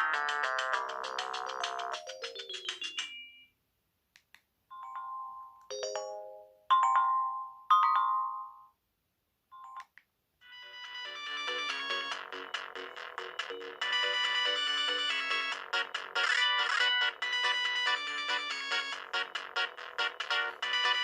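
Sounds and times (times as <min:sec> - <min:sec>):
polyphonic ringtone melody: 0:00.0 - 0:03.5, 0:04.7 - 0:08.8, 0:10.4 - 0:12.4, 0:16.2 - 0:19.0.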